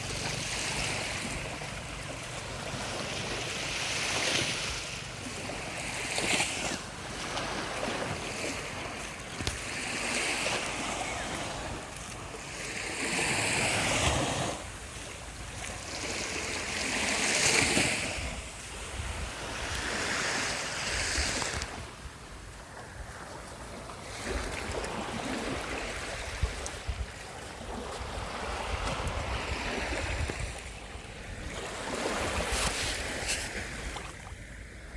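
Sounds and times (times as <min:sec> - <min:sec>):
waves washing up beach: 0:00.0 - 0:34.9
wind on microphone: 0:00.0 - 0:34.9.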